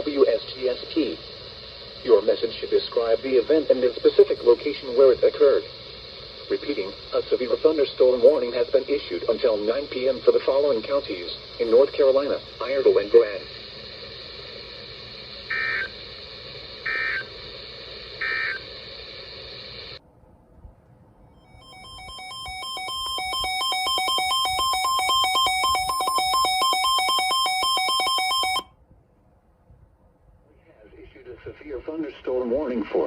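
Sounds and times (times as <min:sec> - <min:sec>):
radio static hiss: 0:00.0 - 0:20.0, 0:30.5 - 0:33.0
data tone bursts: 0:08.6 - 0:20.0, 0:21.4 - 0:28.7
buzzy electronic warbling tone: 0:15.5 - 0:16.0, 0:16.8 - 0:17.3, 0:18.2 - 0:18.6, 0:21.4 - 0:28.6.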